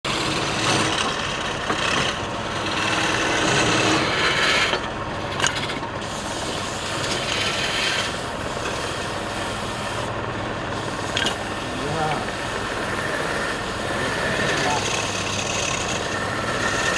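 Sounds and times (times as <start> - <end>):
lathe motor hum: 0.1 - 16.9
tool scraping wood on lathe: 0.1 - 16.9.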